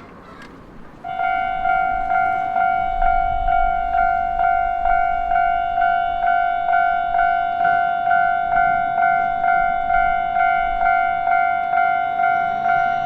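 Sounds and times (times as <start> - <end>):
level crossing bell clanging: 1.1 - 13.0.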